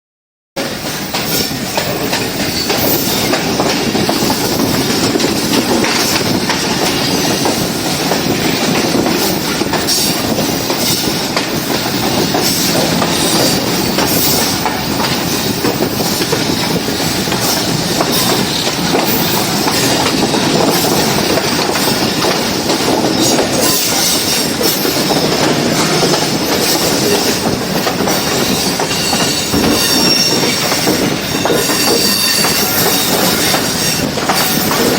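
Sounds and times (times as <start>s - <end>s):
train wheels rumbling on track: 0.6s - 34.9s
wheels clacking over rail joints: 0.6s - 34.9s
high wheel squeal: 12.2s - 22.0s, 23.0s - 34.9s.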